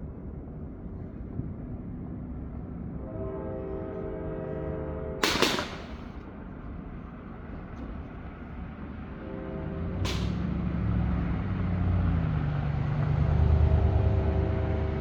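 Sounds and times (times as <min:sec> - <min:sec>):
firework bang: 0:05.2 - 0:06.2
horn-like chord: 0:09.2 - 0:10.6.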